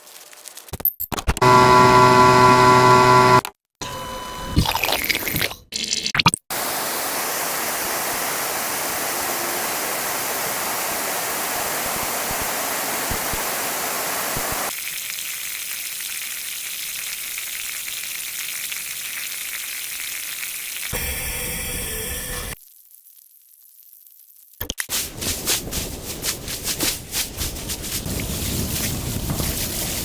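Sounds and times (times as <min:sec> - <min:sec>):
sped-up audio hiss: 0:06.5 - 0:14.8, 0:24.9 - 0:30.0.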